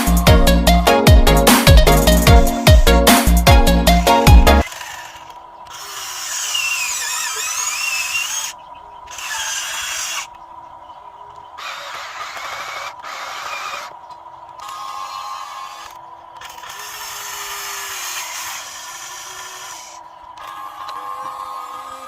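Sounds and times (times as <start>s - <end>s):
electronic music: 0.0s - 4.6s
model excavator motors whirring: 3.9s - 10.5s, 11.2s - 22.0s.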